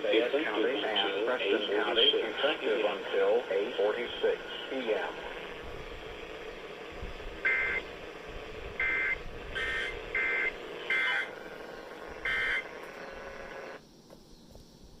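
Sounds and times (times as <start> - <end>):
radio hiss: 0.0 - 13.8
two-tone data squawks: 7.0 - 8.0, 8.7 - 13.8.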